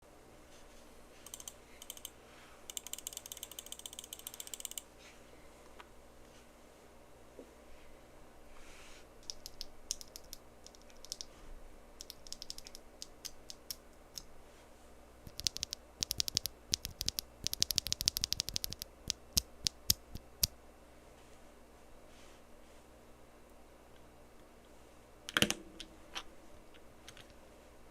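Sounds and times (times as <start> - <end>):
mechanical keyboard typing: 1.2 - 4.9, 9.2 - 11.3, 12.0 - 14.3, 15.3 - 20.3.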